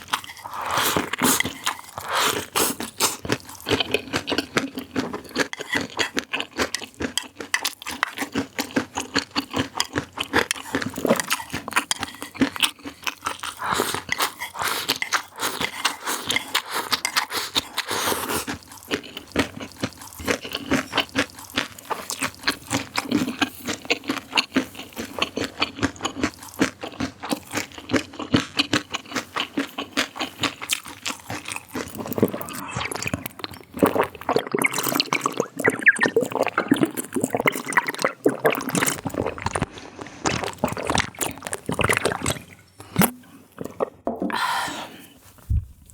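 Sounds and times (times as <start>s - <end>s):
crunchy food being chewed: 0.0s - 45.9s.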